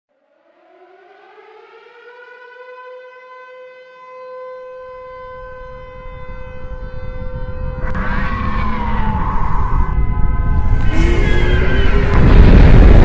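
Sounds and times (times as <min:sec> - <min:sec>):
air raid siren wailing: 0:00.1 - 0:13.0
low rumble: 0:07.2 - 0:13.0.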